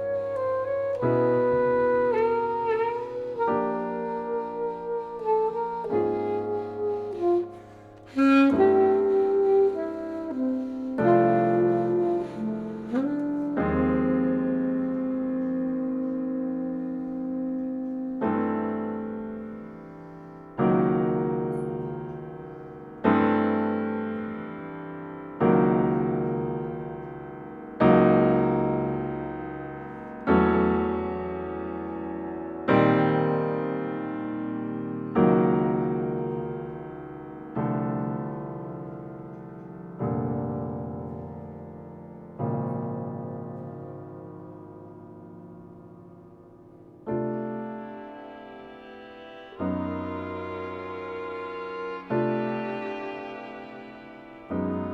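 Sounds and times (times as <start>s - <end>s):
alto saxophone melody: 0.0s - 24.5s, 46.9s - 54.9s
piano chords: 0.0s - 54.9s.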